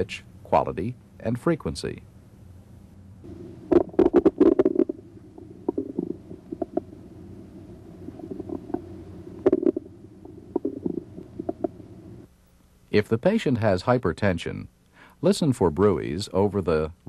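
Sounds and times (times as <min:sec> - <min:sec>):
bowel gurgles and clicks: 0:03.7 - 0:06.9, 0:08.2 - 0:11.8.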